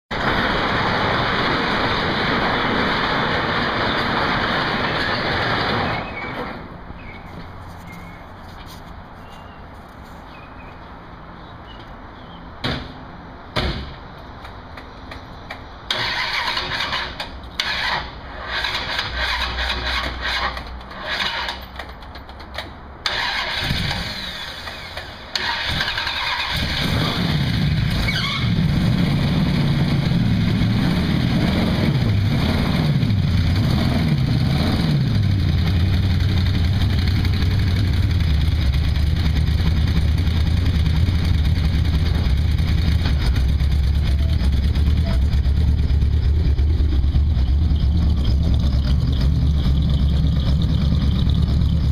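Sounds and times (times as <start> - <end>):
engine cranking: 15.9 - 28.7, 33.3 - 51.9
car engine revving and idling: 23.0 - 51.9.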